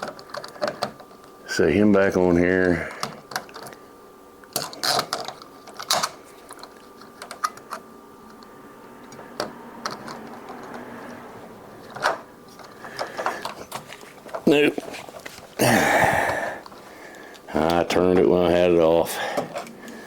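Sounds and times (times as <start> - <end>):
metal parts clicking and knocking: 0.0 - 1.2, 4.5 - 8.4.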